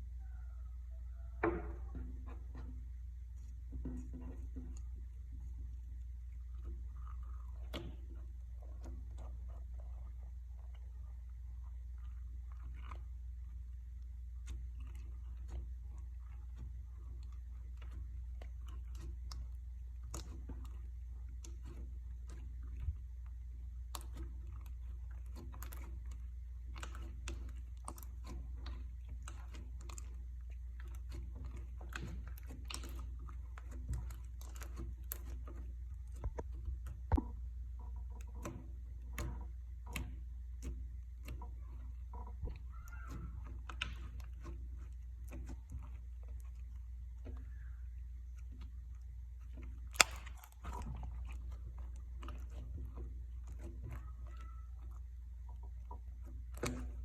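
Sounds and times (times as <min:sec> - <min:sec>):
low steady hum: 0:00.0 - 0:57.0
sticky slime clicks and pops: 0:49.9 - 0:50.6.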